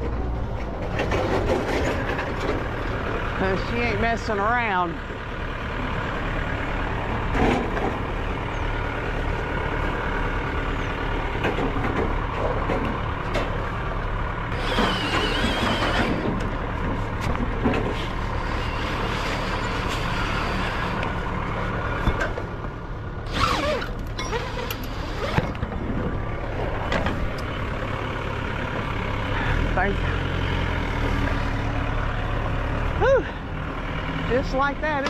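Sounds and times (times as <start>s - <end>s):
forklift engine drone: 0.0s - 35.0s.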